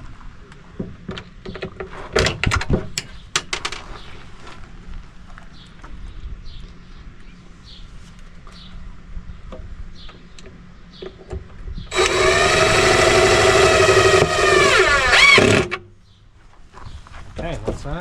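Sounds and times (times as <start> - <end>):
power drill whine: 11.9 - 15.8.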